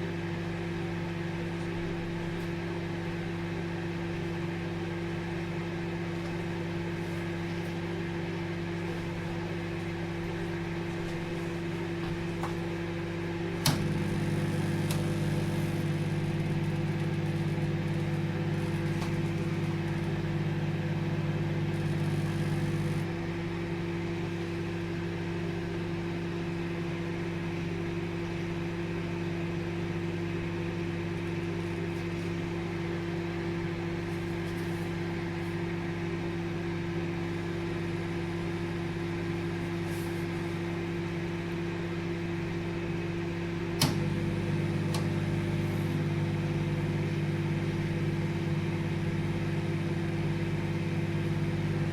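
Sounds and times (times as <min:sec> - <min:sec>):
microwave oven humming: 0:00.0 - 0:51.9
microwave click: 0:13.4 - 0:23.1, 0:43.6 - 0:48.3.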